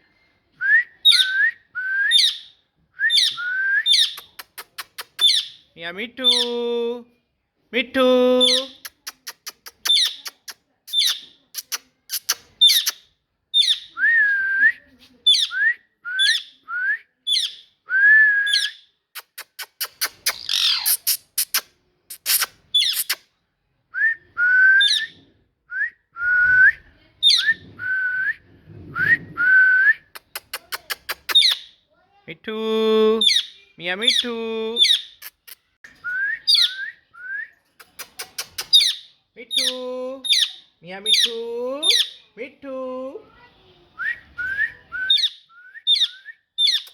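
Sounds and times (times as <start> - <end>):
parrot whistling and chirping: 1.0 - 4.3, 18.4 - 18.9, 19.8 - 21.6, 24.5 - 25.2, 35.9 - 37.4, 44.1 - 46.9.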